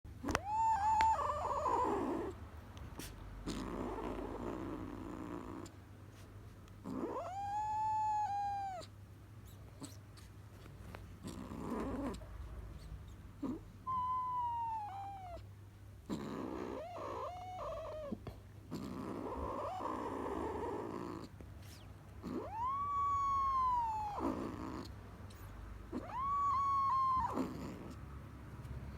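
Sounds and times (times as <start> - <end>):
kitten purring: 0.1 - 28.9
kitten yowling: 0.2 - 2.4, 6.9 - 8.9, 13.4 - 15.5, 16.1 - 18.2, 19.3 - 28.0.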